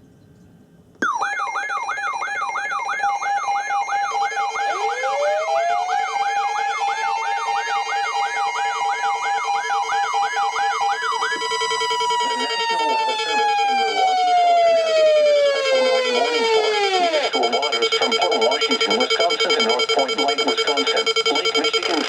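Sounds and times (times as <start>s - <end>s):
tone gliding upward: 1.0s - 17.8s
warbling siren tone: 1.0s - 21.7s
rapid electronic beeping: 1.0s - 22.0s.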